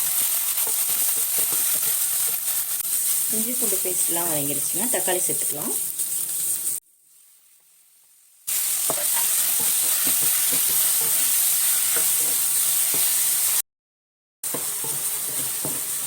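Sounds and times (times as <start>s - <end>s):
tomatoes sizzling in hot oil: 0.0s - 13.6s, 14.4s - 16.0s
spoon stirring and scraping pan: 0.2s - 4.1s, 8.5s - 13.5s, 14.4s - 16.0s.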